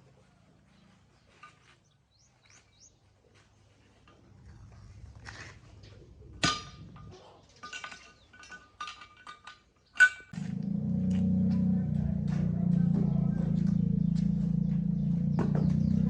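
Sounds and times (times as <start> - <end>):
metal tools clanging on metal: 6.4 - 10.5.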